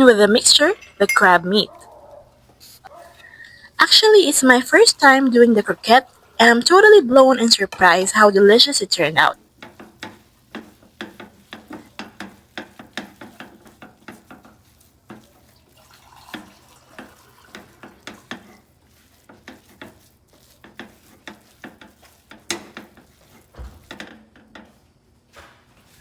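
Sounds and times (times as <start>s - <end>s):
utensil scraping a pan: 0.0s - 25.0s.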